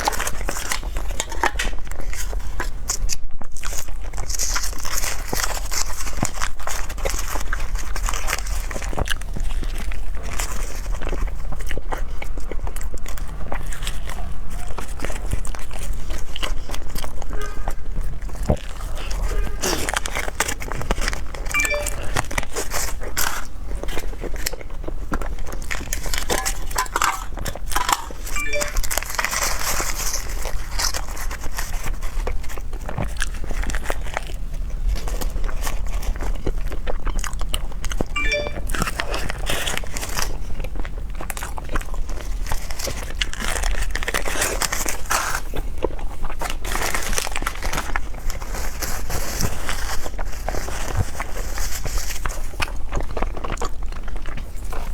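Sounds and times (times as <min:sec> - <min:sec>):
person chewing food: 0:52.1 - 0:54.9.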